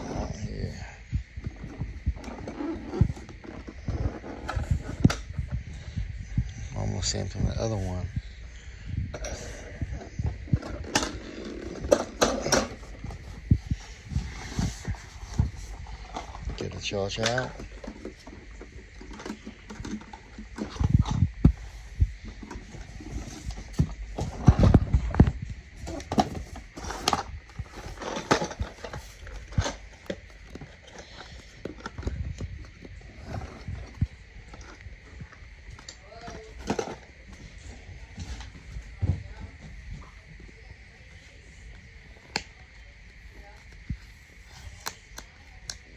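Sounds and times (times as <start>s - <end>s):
hard plastic parts clattering: 10.0s - 25.2s, 25.8s - 34.7s.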